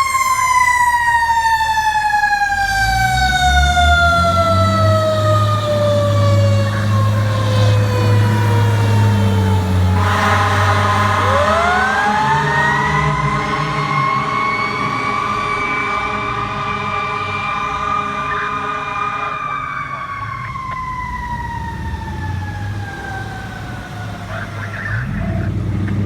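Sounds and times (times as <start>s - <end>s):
fire truck siren wailing: 0.0s - 26.0s
low engine rumble: 0.0s - 26.0s
air horn blast: 3.5s - 20.1s.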